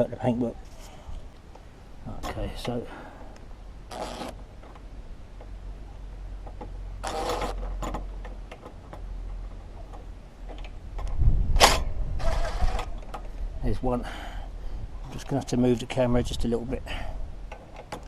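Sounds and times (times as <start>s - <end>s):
short grinding burst: 3.9s - 4.4s, 7.0s - 7.6s, 11.6s - 12.9s.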